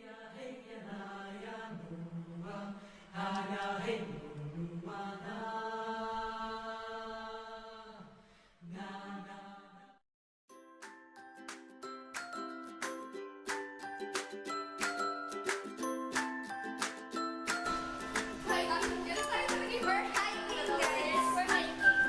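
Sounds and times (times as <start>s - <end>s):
voices singing held notes: 17.6s - 22.0s.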